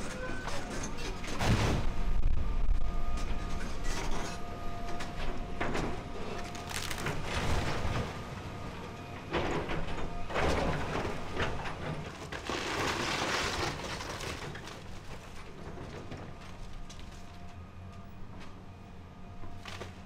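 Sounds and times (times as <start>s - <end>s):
bulldozer rumble: 0.0s - 20.0s
wood and debris crashing: 5.6s - 17.3s.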